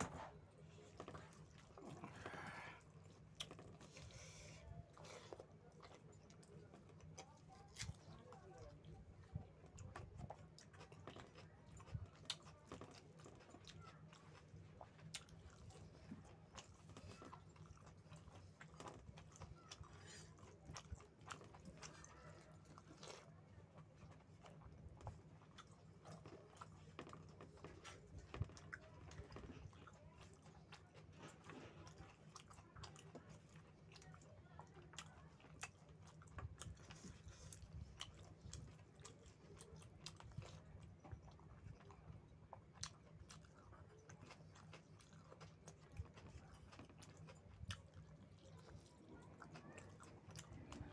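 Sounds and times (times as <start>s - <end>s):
person chewing food: 0.0s - 50.9s.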